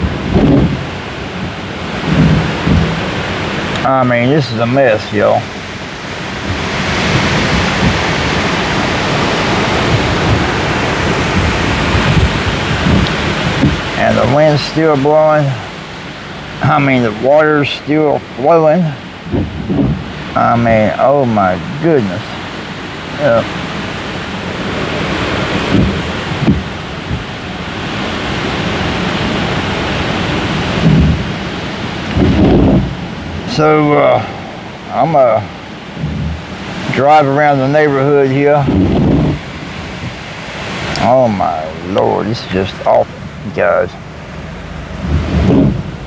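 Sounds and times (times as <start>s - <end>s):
low thumps: 0.0s - 46.0s
strong wind buffeting microphone: 0.0s - 46.0s.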